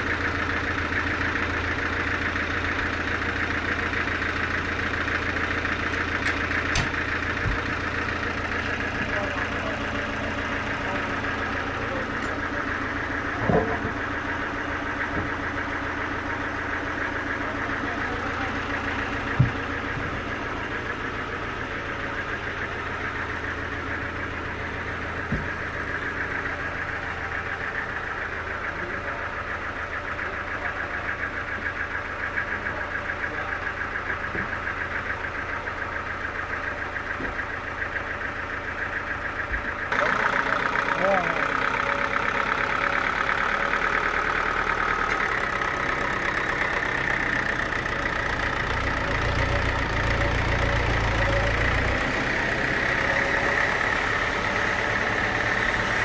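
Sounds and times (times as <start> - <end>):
sawmill engine running: 0.0 - 56.0.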